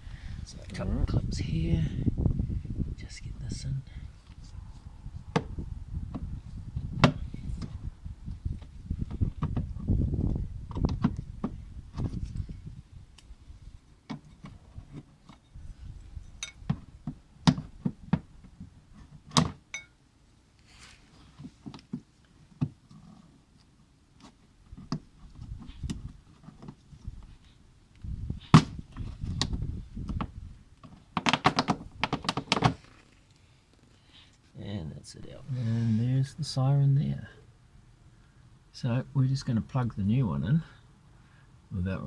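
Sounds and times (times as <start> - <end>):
plastic panel knocks and clicks: 7.0 - 7.2.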